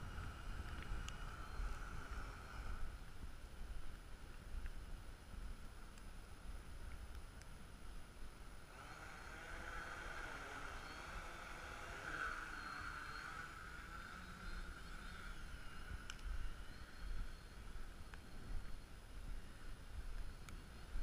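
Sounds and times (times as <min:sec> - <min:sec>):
drone propellers whining: 0:00.0 - 0:03.3, 0:08.6 - 0:21.0.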